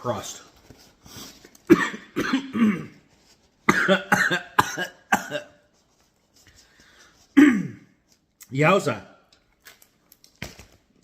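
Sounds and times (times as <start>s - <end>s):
man coughing hard: 1.7s - 3.1s, 3.7s - 5.6s, 7.4s - 8.0s.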